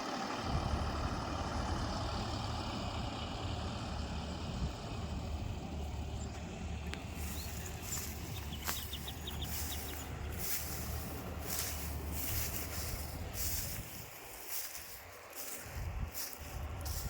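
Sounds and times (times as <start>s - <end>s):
low engine hum: 0.0s - 17.0s
bird chirps: 7.1s - 10.7s.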